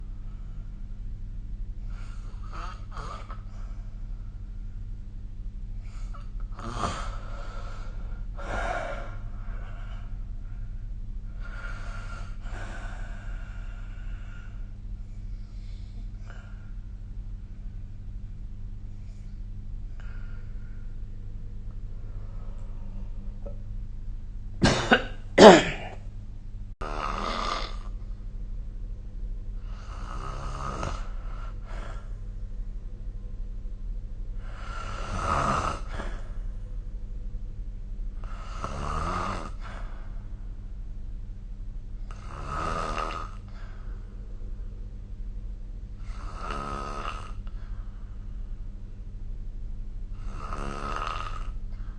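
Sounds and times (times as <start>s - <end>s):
steady low hum: 0.0s - 51.9s
person snoring: 1.9s - 3.7s, 5.8s - 10.2s, 11.4s - 14.6s, 26.8s - 28.0s, 29.6s - 32.2s, 34.4s - 36.4s, 38.2s - 40.0s, 42.1s - 43.8s, 46.0s - 47.8s, 50.1s - 51.9s.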